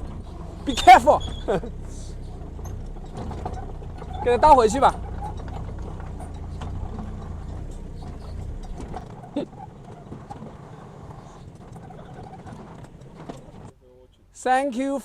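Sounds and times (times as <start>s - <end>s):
clicks and clanks: 0.0s - 14.2s
small excavator engine running: 0.0s - 14.4s.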